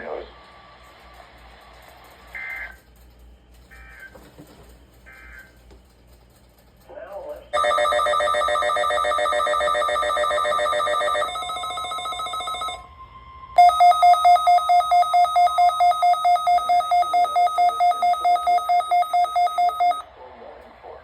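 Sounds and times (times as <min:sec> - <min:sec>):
sharp loud beeping: 0:07.6 - 0:20.0
short steady alarm tone: 0:07.6 - 0:20.1.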